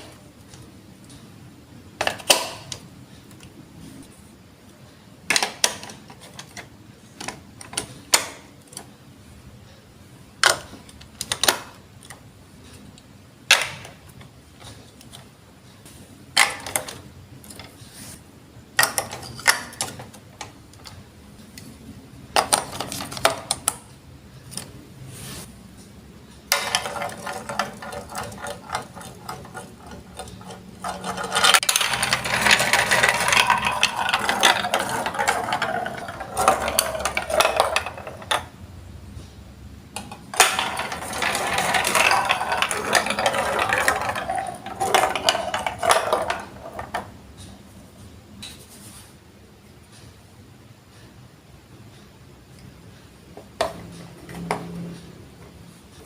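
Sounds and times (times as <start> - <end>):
plastic blocks clicking: 2.0 - 2.8, 10.4 - 12.2, 16.4 - 17.8, 18.8 - 21.0, 22.3 - 23.8, 26.5 - 38.6, 40.0 - 47.1
marbles rolling down plastic track: 26.5 - 38.6, 40.0 - 47.1.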